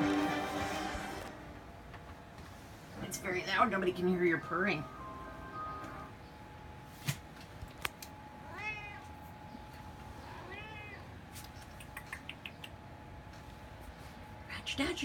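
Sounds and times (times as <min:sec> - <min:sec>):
cat meowing: 0:08.4 - 0:09.1, 0:10.3 - 0:11.1.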